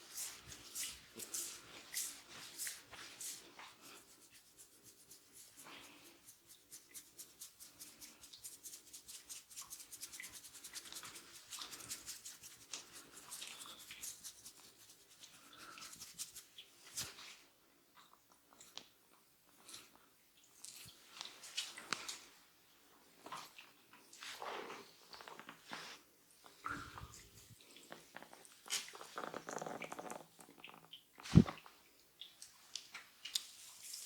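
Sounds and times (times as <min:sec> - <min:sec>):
hands rubbing hair: 0:00.0 - 0:17.2.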